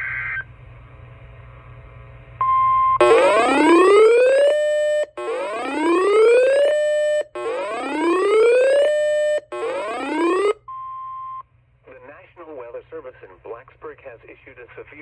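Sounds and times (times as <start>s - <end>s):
whooping alarm siren: 3.0s - 10.6s.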